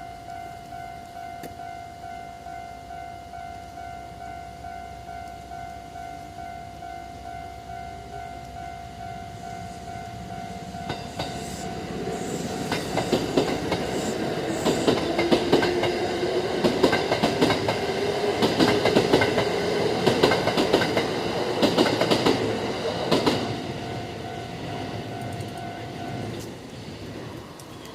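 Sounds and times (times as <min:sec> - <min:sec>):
crossing warning bell ringing: 0:00.0 - 0:26.5
train motor whine: 0:09.1 - 0:26.6
train wheels clattering: 0:10.8 - 0:24.1.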